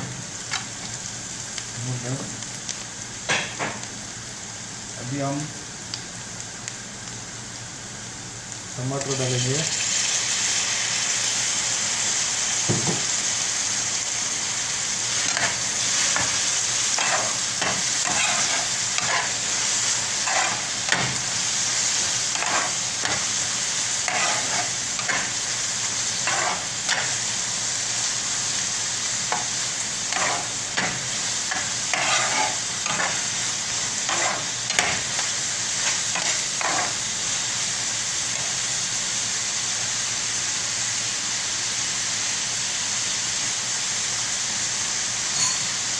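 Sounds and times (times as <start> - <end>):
vegetables sizzling in hot oil: 0.0 - 45.9
spatula scraping a pan: 15.2 - 19.5, 20.2 - 21.2, 22.3 - 23.3, 24.0 - 25.4, 26.2 - 27.2, 30.1 - 33.3, 34.0 - 35.0, 35.8 - 37.0.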